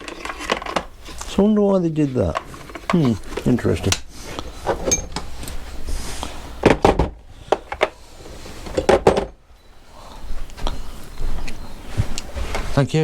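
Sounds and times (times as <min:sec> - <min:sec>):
metal parts knocking and clinking: 0:00.0 - 0:01.3, 0:04.6 - 0:05.3, 0:08.8 - 0:09.4.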